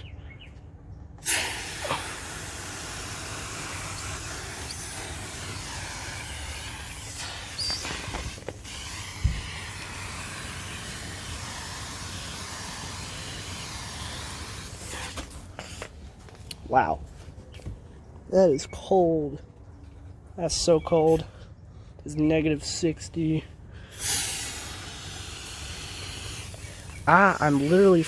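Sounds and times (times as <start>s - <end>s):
propane spray hissing: 1.2s - 15.9s, 23.9s - 28.0s.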